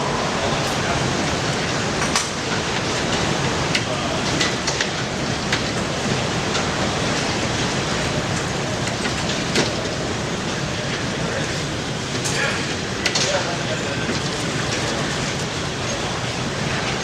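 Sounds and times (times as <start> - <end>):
windstorm rushing: 0.0 - 4.4.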